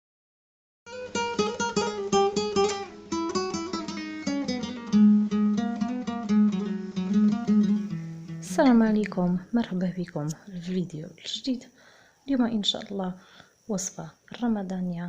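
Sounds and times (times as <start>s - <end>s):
acoustic guitar plucked notes: 0.9s - 10.3s.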